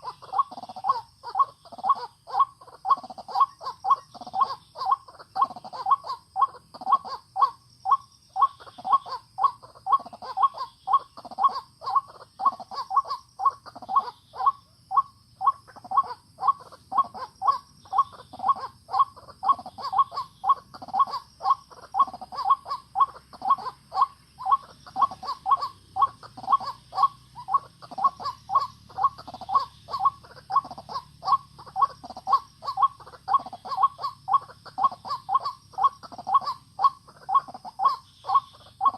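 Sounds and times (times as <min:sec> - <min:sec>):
waterhen calling: 0:00.0 - 0:38.9.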